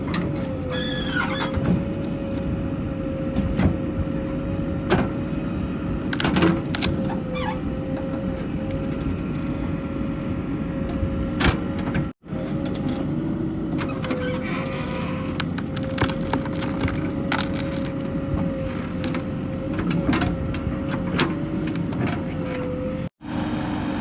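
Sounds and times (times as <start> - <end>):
diesel engine running: 0.0 - 24.0
brief squeaks: 0.7 - 1.6.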